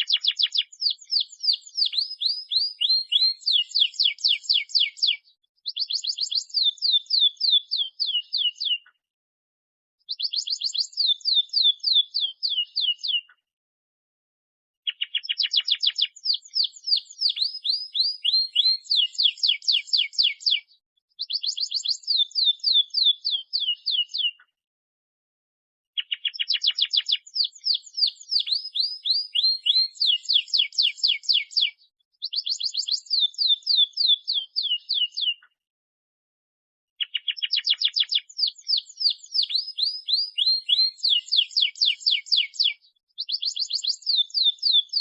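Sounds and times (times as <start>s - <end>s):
canary singing trills: 0.0s - 8.9s, 10.1s - 13.4s, 14.9s - 24.5s, 26.0s - 35.6s, 37.0s - 45.0s.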